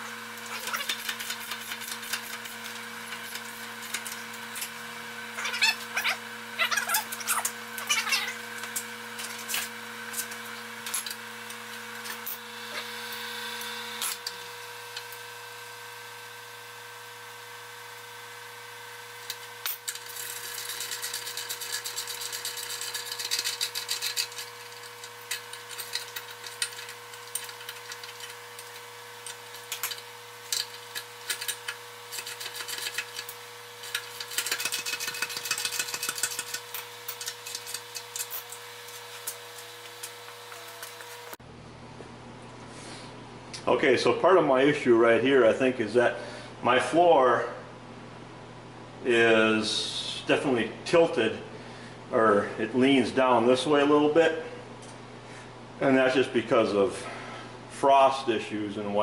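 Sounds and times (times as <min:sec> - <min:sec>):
tool scraping with rapid clicking: 0:00.0 - 0:15.2, 0:19.2 - 0:41.4
electrical hum: 0:00.0 - 0:59.0.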